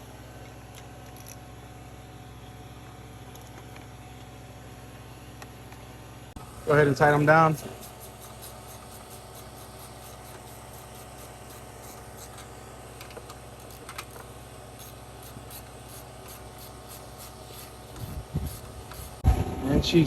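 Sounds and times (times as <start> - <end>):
steady low hum: 0.0 - 20.0
hand tools clicking and scraping: 7.0 - 19.2.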